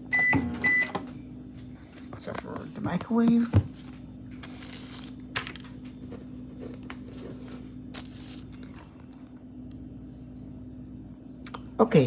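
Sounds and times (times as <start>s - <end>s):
microwave oven humming: 0.0s - 12.0s.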